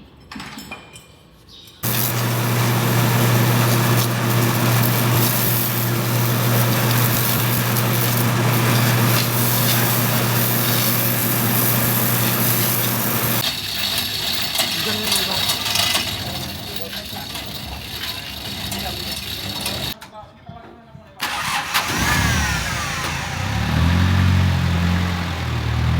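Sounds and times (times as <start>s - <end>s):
motor-driven machine humming: 1.8s - 13.4s, 18.8s - 20.0s.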